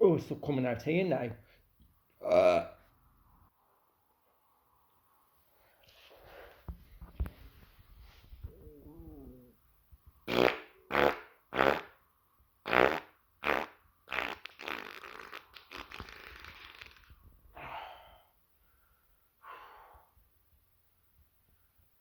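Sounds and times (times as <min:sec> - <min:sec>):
person farting: 0:02.2 - 0:02.8, 0:10.3 - 0:12.0, 0:12.6 - 0:17.1.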